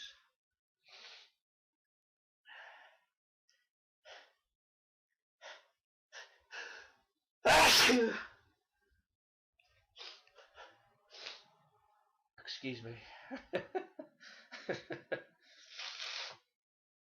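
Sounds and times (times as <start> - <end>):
person sneezing: 7.5 - 8.3.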